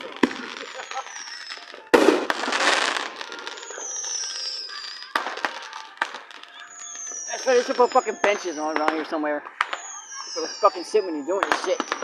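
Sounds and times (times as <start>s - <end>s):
fireworks bangs: 0.0s - 12.0s
fireworks crackling: 0.0s - 12.0s
firework whistle falling in pitch: 0.2s - 9.0s.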